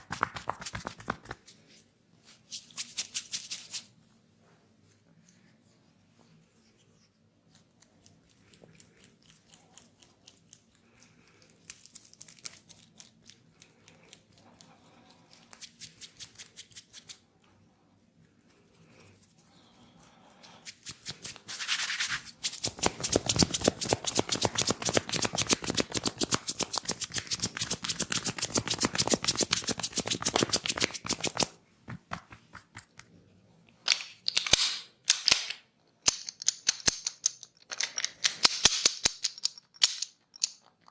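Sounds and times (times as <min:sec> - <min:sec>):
fast sharp slaps and snaps: 0:00.0 - 0:01.4, 0:20.7 - 0:33.1
hands tapping on scalp: 0:00.0 - 0:01.4, 0:22.5 - 0:33.1.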